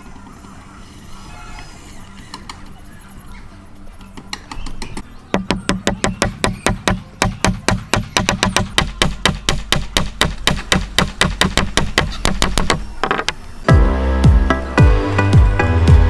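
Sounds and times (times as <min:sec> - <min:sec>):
rapid wooden knocks: 0:04.4 - 0:13.4.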